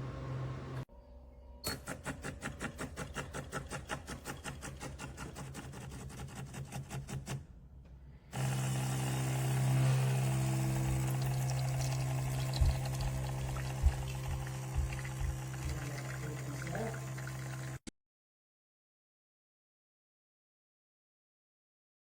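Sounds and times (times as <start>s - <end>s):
pump hum: 8.3s - 17.8s.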